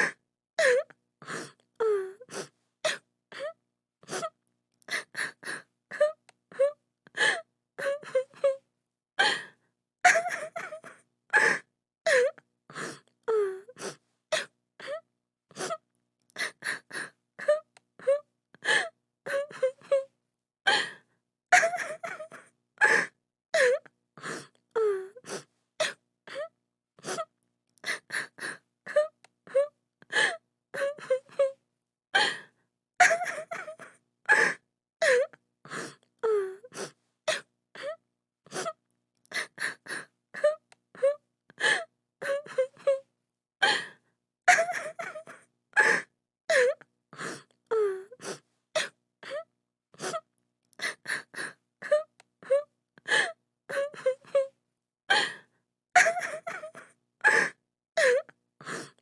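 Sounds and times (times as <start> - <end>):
woman crying and sobbing: 10.1 - 12.3, 21.6 - 23.8, 33.0 - 35.2, 44.5 - 46.8, 56.0 - 58.2.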